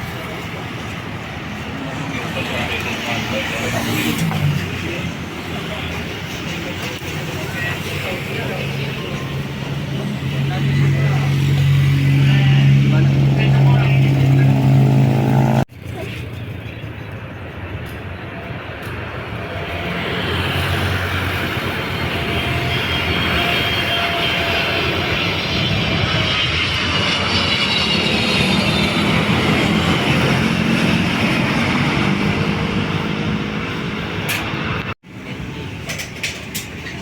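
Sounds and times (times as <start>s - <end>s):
jet engine noise with whine: 0.0s - 37.0s
low engine hum: 8.6s - 17.8s.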